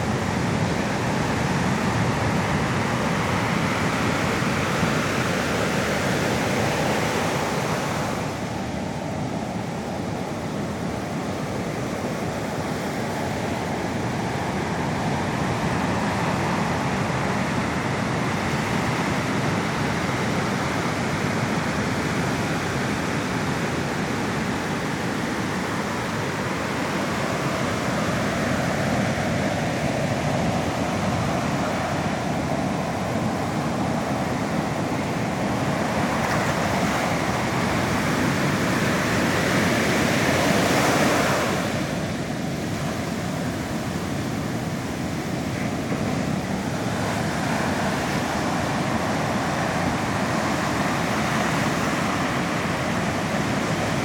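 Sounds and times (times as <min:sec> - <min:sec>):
sea surf rushing: 0:00.0 - 0:54.0.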